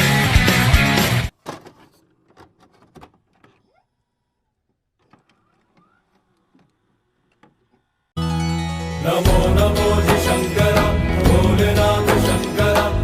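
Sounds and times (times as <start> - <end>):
rock ringtone music: 0.0 - 1.3, 8.2 - 13.0.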